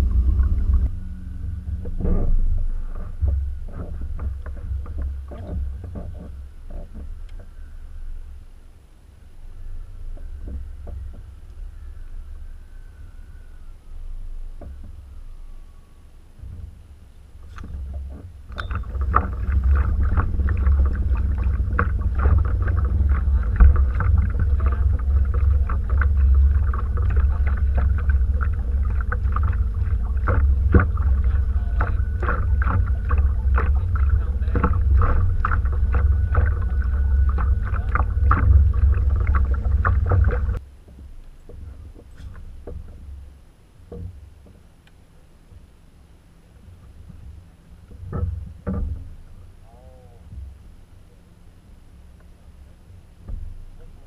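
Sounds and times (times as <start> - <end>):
low rumble: 0.0 - 43.4
faint constant hum: 0.0 - 54.0
small knocks and water splashes: 1.8 - 7.5, 17.4 - 45.7, 46.5 - 49.3.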